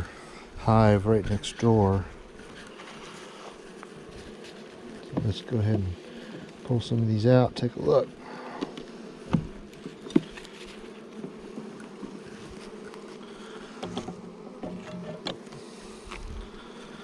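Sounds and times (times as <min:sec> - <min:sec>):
bees buzzing: 0:00.0 - 0:17.0.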